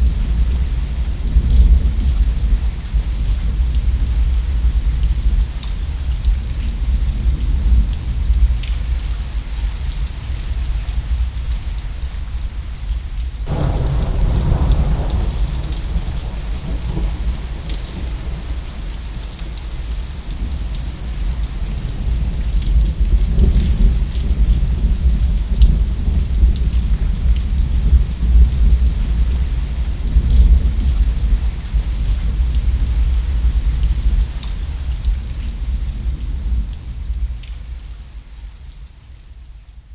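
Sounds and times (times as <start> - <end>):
raindrop ticks: 0.0 - 39.9
steady rain: 0.0 - 39.9
thunderclap: 13.5 - 26.8
low rumble: 13.5 - 33.6.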